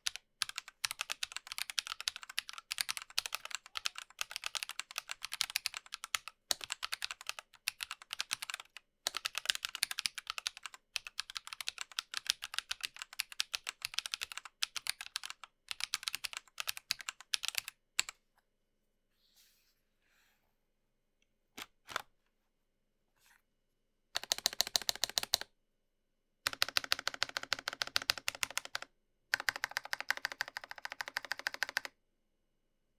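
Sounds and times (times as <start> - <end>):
fast typing on mechanical keyboard: 0.0 - 18.1, 24.2 - 25.4, 26.5 - 32.0.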